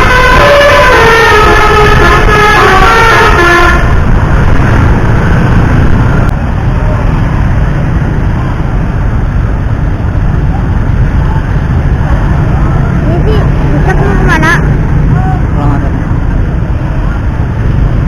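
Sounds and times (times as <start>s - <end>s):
bus horn playing a tune: 0.0s - 4.0s
low vehicle rumble: 0.0s - 18.0s.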